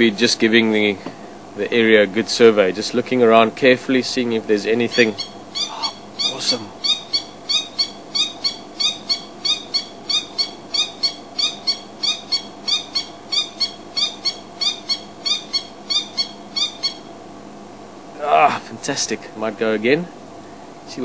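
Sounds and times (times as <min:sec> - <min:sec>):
bird repeating high notes: 0:05.1 - 0:07.2.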